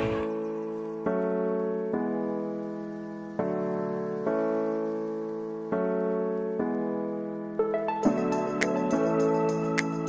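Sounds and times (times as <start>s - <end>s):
piano chords: 0.0s - 10.0s.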